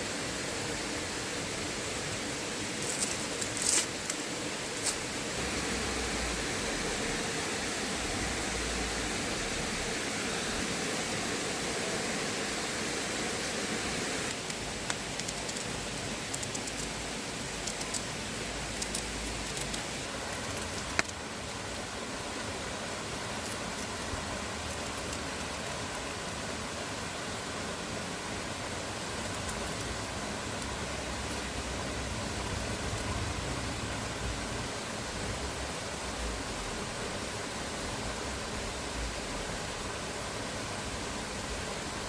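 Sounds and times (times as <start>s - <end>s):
sharp ticks and crackles: 2.8s - 5.1s, 14.3s - 21.9s, 22.8s - 26.2s, 29.0s - 31.7s.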